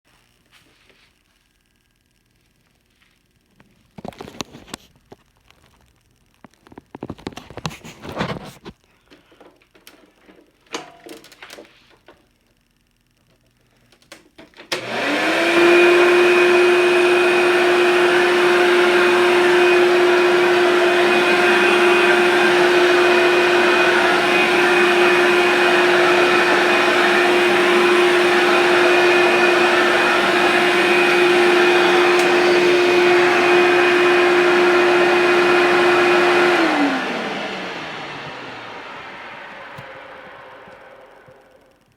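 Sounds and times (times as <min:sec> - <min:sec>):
vacuum cleaner motor whine: 0:14.6 - 0:41.9.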